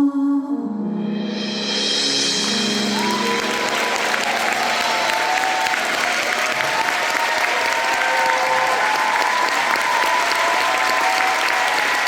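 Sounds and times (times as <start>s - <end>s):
audience applauding: 2.5s - 12.0s.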